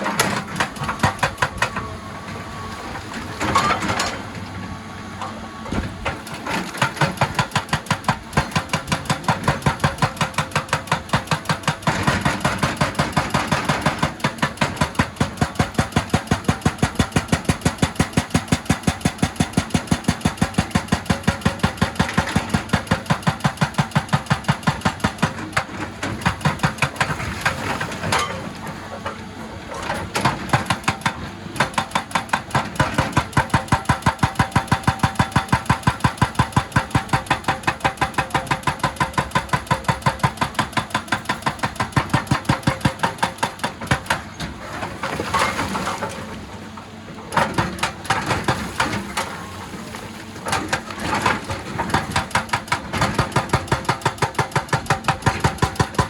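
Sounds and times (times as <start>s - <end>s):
hydraulic breaker hammering on stone: 0.0s - 1.8s, 6.5s - 28.5s, 29.9s - 44.4s, 47.3s - 49.5s, 50.5s - 56.0s
diesel engine running: 0.0s - 15.7s.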